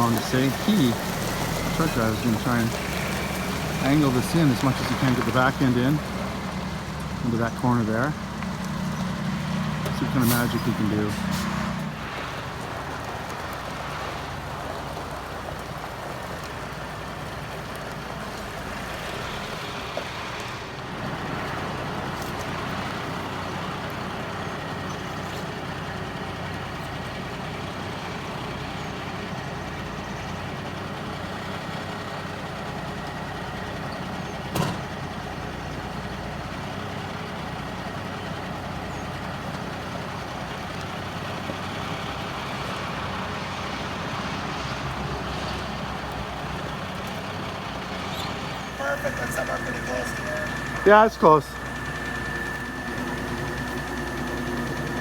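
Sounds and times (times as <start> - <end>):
heavy truck engine running: 0.0 - 55.0.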